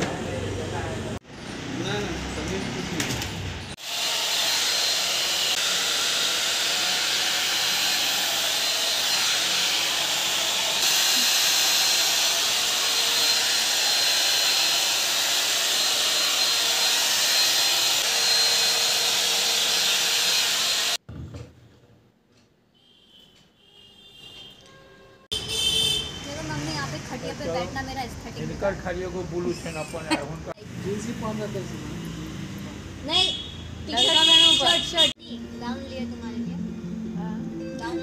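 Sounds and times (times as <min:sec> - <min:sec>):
hair dryer blowing: 0:03.7 - 0:21.0.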